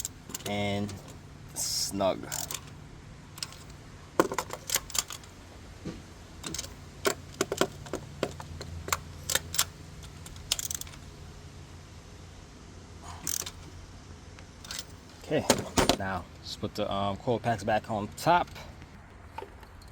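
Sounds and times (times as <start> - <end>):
hand ratchet clicking: 2.2 - 2.8, 3.4 - 5.3, 6.4 - 11.0, 13.2 - 13.7.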